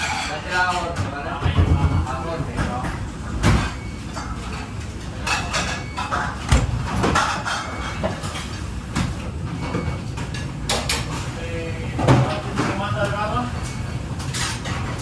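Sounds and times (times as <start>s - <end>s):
pans and plates clattering: 0.0s - 11.3s.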